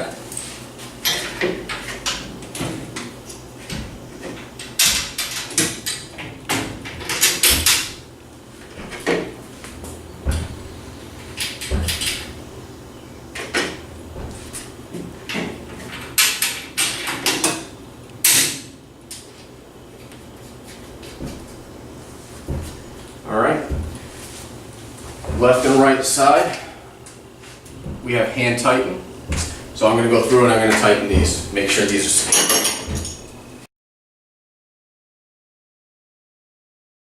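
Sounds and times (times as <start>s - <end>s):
metal parts knocking and scraping: 3.7s - 8.0s, 10.2s - 12.5s, 30.6s - 33.5s.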